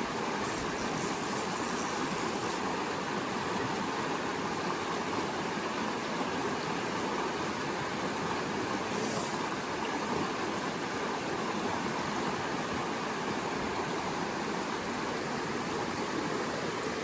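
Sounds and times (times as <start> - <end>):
creek water rushing: 0.0 - 17.0.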